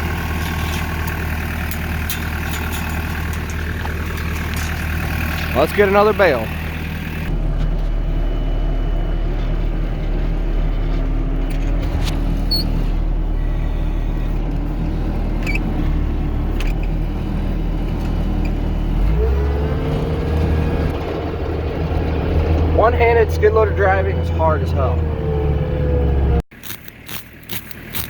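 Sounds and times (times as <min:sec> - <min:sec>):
loader engine running: 0:00.0 - 0:28.0
short metal clanks: 0:00.3 - 0:05.6.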